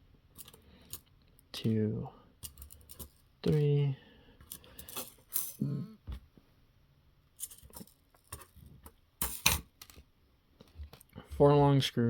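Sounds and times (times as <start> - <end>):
metal screws clinking: 4.5 - 5.6, 7.4 - 8.6.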